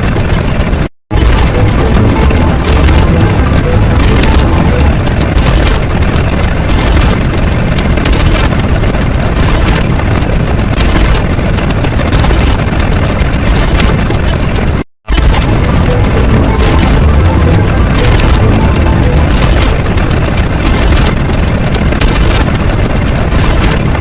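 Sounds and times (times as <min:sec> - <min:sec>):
loud bassy rumbling: 0:00.0 - 0:24.0.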